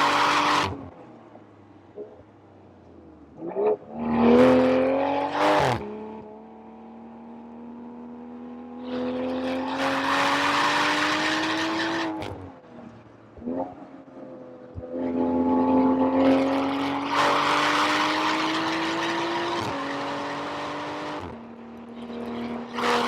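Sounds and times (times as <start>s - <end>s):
car engine accelerating hard: 3.3s - 6.3s, 7.8s - 12.5s, 14.8s - 23.0s.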